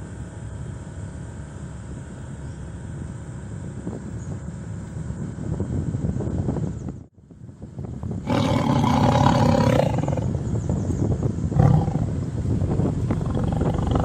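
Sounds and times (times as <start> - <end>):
steady low rumble: 0.0 - 14.0
loud rough roar: 8.2 - 10.5, 11.5 - 14.0.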